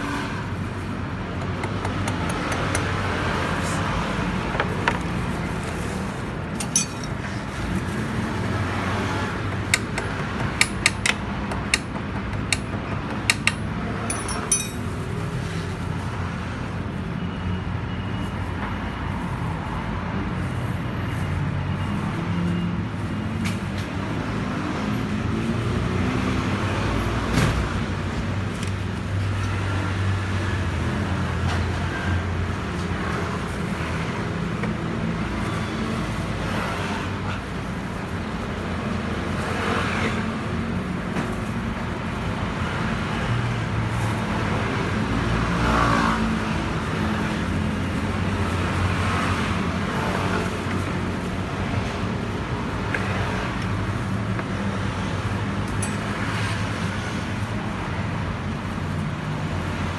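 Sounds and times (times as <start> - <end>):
sharp metallic clinks: 6.6 - 7.3, 10.6 - 15.1.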